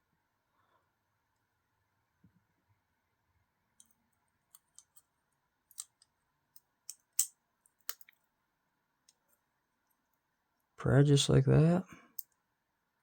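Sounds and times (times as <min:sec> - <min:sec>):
small metal parts clicking: 0:05.7 - 0:08.2.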